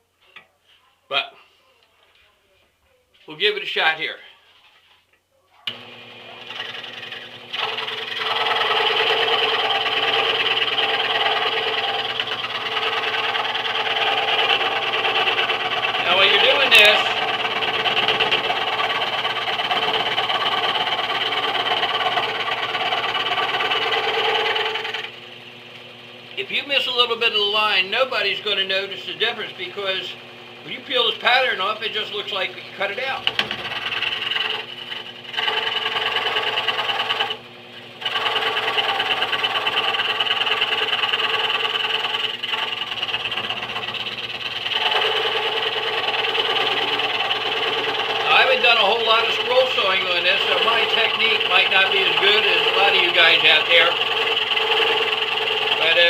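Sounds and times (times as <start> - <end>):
scroll saw cutting wood: 5.7 - 56.0.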